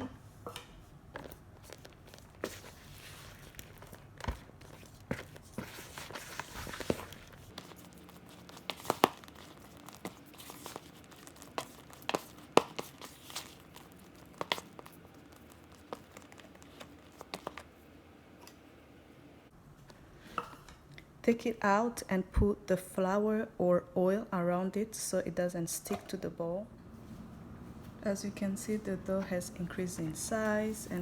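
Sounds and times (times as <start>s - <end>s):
hands kneading sticky dough: 1.1s - 18.0s.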